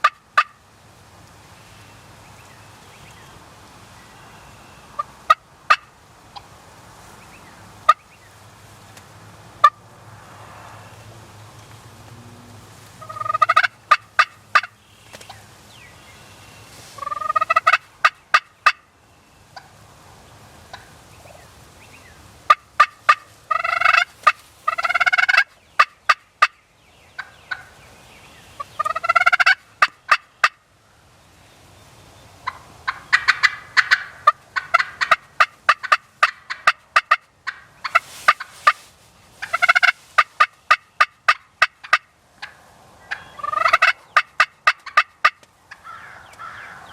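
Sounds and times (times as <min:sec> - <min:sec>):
turkey gobbling: 0:00.0 - 0:00.6, 0:04.9 - 0:06.5, 0:07.9 - 0:08.1, 0:13.0 - 0:15.4, 0:17.0 - 0:18.9, 0:19.5 - 0:19.8, 0:20.7 - 0:21.4, 0:22.5 - 0:26.6, 0:27.2 - 0:27.8, 0:28.6 - 0:30.6, 0:32.4 - 0:46.9.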